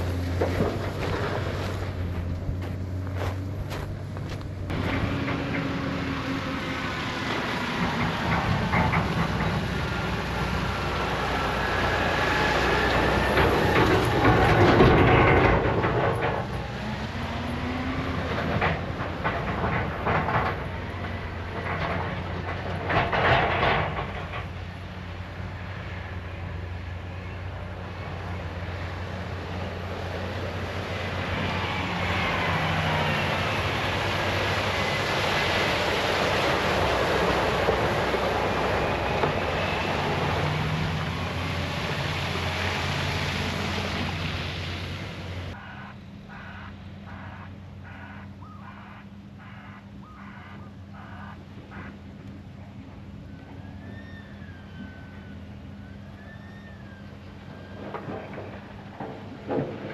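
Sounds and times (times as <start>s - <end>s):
machinery clanks and knocks: 0.0s - 27.5s, 29.0s - 45.6s, 57.2s - 59.9s
heavy machinery engine drone: 0.0s - 59.9s.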